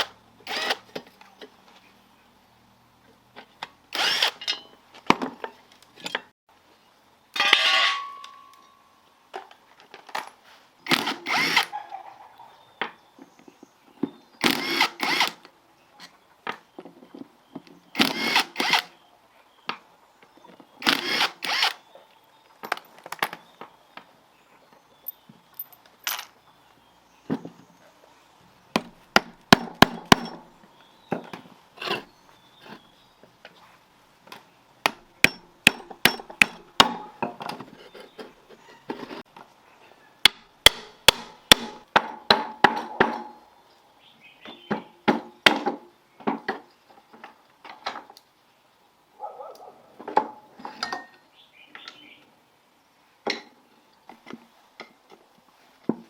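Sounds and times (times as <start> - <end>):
power tool bursts: 0.0 - 0.9, 3.9 - 4.4, 10.9 - 11.7, 14.4 - 15.4, 18.0 - 18.9, 20.8 - 21.8.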